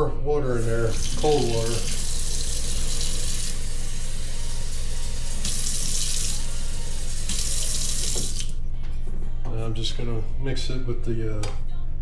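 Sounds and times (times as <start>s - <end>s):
faucet water splashing into pan: 0.5s - 8.5s.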